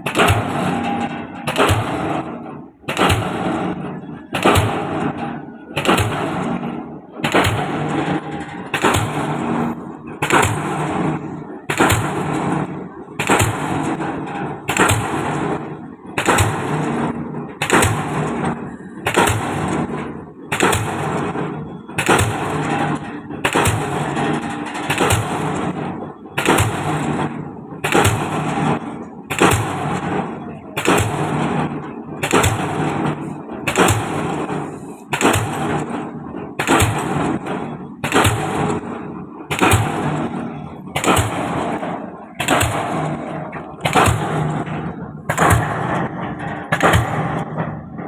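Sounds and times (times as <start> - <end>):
pile hammer blows: 0.0 - 48.0.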